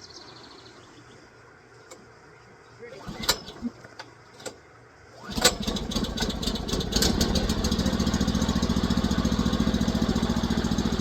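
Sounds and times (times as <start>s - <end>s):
gasoline engine starting and idling: 3.0s - 3.8s, 5.2s - 11.0s.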